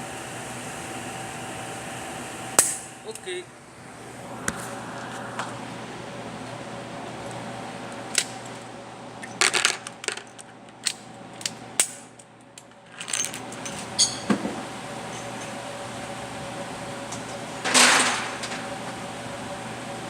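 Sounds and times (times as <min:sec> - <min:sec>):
low hum: 0:02.7 - 0:09.3.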